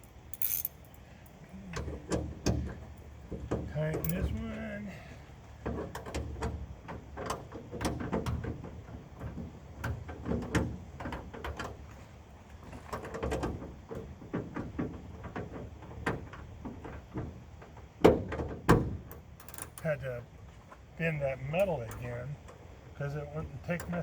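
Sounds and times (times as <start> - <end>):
metallic clicks of hand tools: 0.0 - 1.0.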